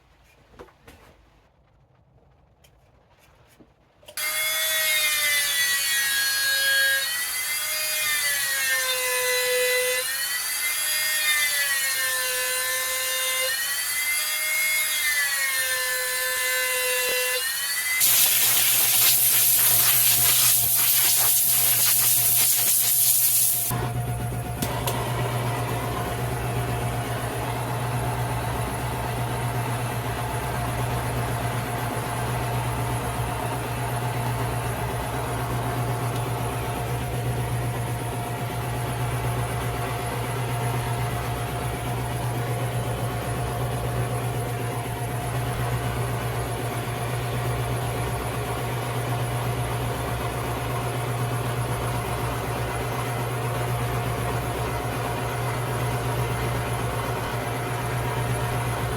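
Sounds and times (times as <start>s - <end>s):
gas torch hissing: 18.0s - 23.8s.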